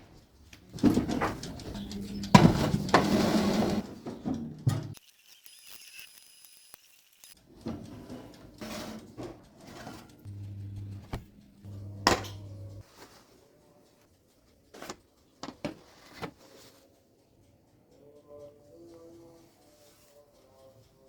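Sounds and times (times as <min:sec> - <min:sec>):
sharp clicks and knocks: 0:00.7 - 0:05.0, 0:07.6 - 0:12.8
low electric hum: 0:10.1 - 0:12.8.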